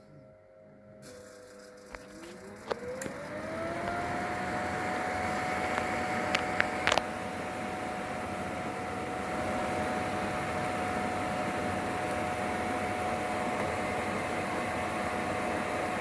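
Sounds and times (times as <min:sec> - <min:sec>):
fan whirring: 0:00.0 - 0:16.0.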